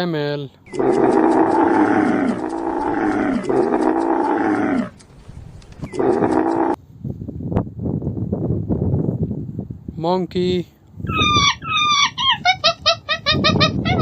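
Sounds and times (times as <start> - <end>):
camel bellowing: 0.7 - 5.0, 5.8 - 6.8.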